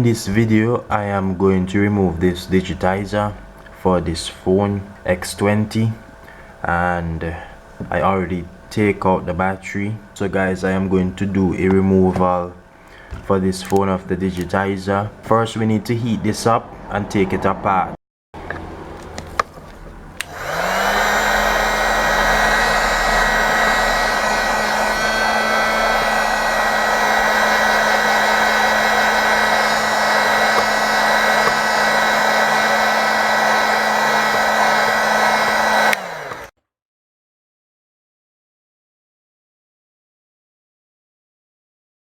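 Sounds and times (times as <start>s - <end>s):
hot-air blower rushing air: 19.4s - 36.5s.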